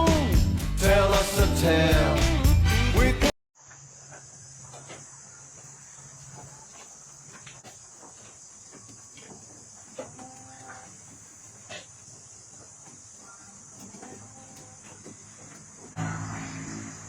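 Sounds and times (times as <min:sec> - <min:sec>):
crickets chirping: 0:03.6 - 0:17.0.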